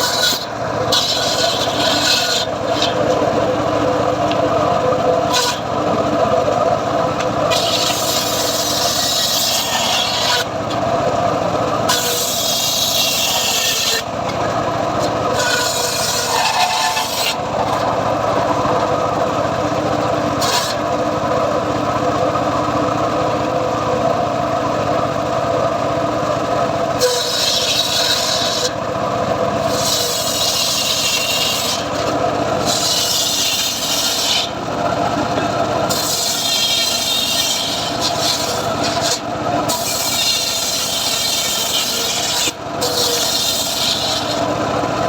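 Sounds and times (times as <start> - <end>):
saw blade rasping through wood: 0.0 - 4.4, 5.1 - 5.9, 7.2 - 11.0, 11.8 - 18.6, 20.3 - 20.9, 26.9 - 44.9
engine-driven saw running: 0.0 - 45.0.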